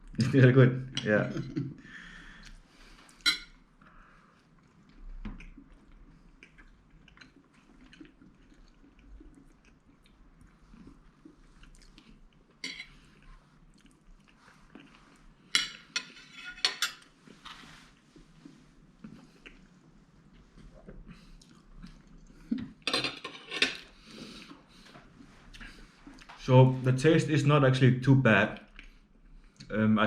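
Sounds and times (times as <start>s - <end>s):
person chewing: 4.5s - 15.8s, 17.0s - 22.8s, 23.8s - 26.4s.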